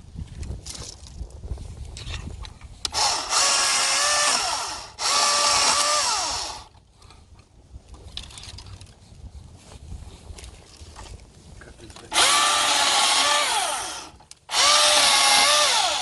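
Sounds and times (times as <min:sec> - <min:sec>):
battery chainsaw motor whine: 0:02.9 - 0:06.7, 0:12.1 - 0:16.0.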